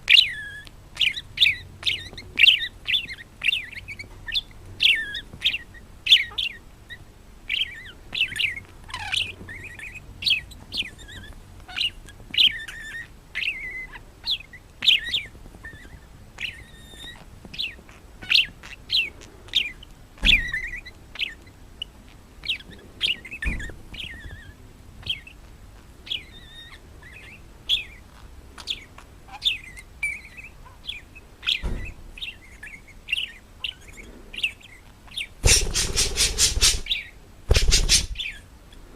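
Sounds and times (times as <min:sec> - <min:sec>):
bird chirping: 0:00.0 - 0:25.4, 0:26.0 - 0:38.5
dull thumps: 0:35.4 - 0:36.9, 0:37.5 - 0:38.2.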